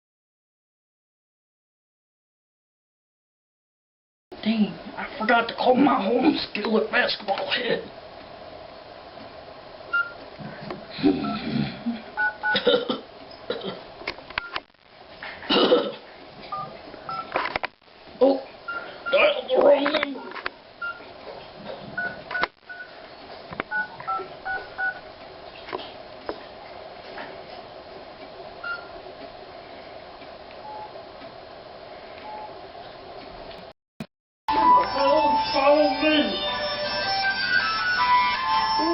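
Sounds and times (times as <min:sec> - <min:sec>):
phone keypad beeps: 0:09.9 - 0:10.2, 0:12.2 - 0:12.5, 0:23.7 - 0:25.0.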